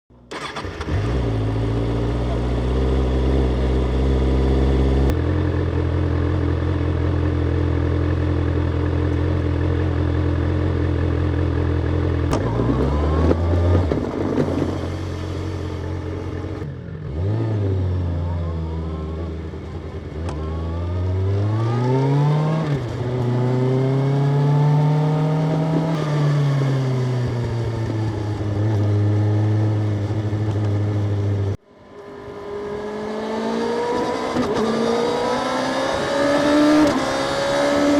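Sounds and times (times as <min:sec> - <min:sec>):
motorcycle engine and exhaust: 0:00.1 - 0:37.9.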